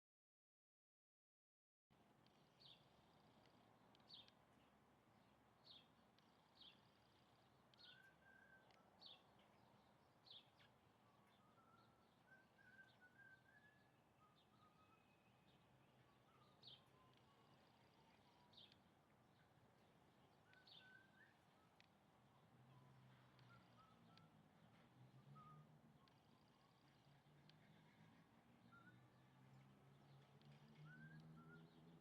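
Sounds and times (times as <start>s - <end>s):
sharp high bird chirps: 5.7s - 9.3s, 10.3s - 18.8s, 20.4s - 21.9s, 22.7s - 24.3s, 30.4s - 32.0s.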